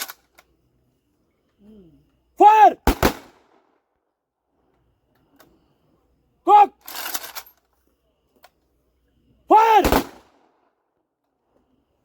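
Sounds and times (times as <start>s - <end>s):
person shouting command: 2.4s - 2.8s, 6.4s - 6.8s, 9.5s - 10.0s.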